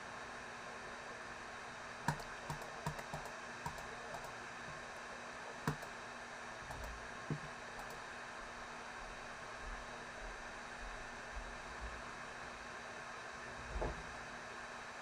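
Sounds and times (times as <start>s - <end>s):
computer keyboard clicks: 2.1s - 4.3s, 5.7s - 5.9s, 6.7s - 8.0s.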